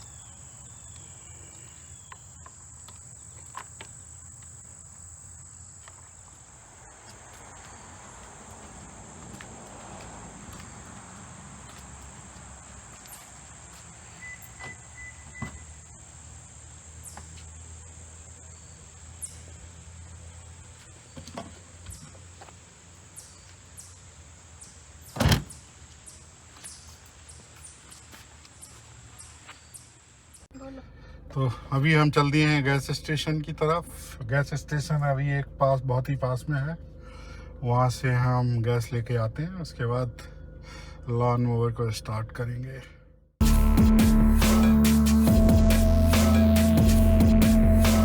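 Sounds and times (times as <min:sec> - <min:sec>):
low hum: 0:30.5 - 0:48.0.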